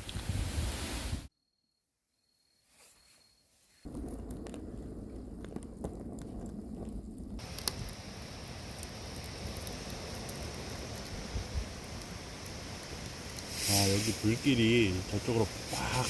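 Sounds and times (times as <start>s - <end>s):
wood fire crackling: 3.8s - 16.0s
steady hiss: 7.4s - 16.0s.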